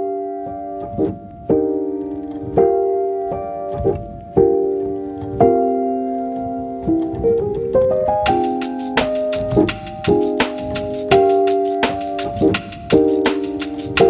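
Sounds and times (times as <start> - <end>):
piano chords: 0.0 - 14.0.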